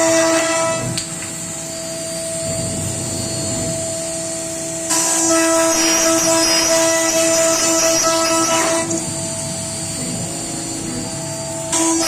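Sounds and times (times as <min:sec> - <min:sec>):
router spindle whining: 0:00.0 - 0:12.0.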